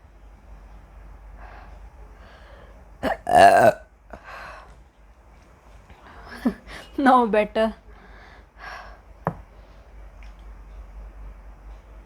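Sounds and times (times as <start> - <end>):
woman burping: 3.0 - 3.8.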